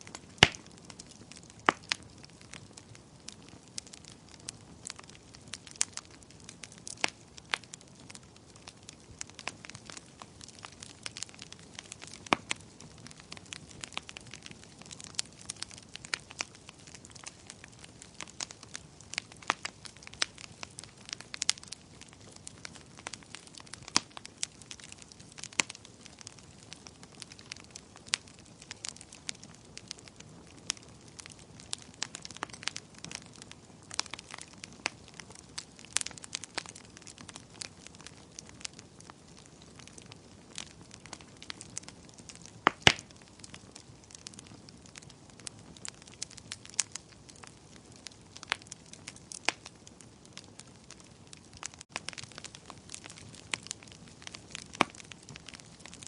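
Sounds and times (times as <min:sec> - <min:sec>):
wood fire crackling: 0:00.0 - 0:56.0.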